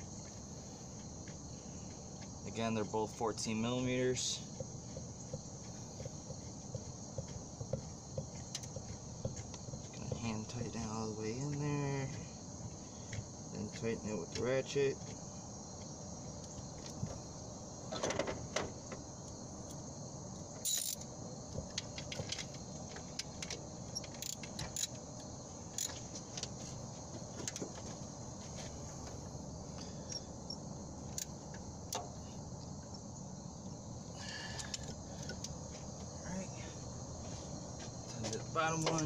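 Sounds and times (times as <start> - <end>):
crickets chirring: 0.0 - 39.0
metal clinks: 20.6 - 21.0
socket ratchet clicking: 20.6 - 21.0, 24.1 - 24.9.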